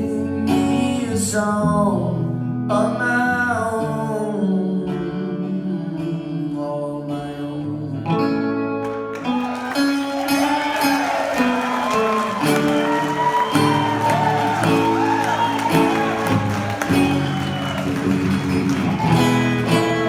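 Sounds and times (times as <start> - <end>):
guitar chords ringing: 8.1 - 20.0.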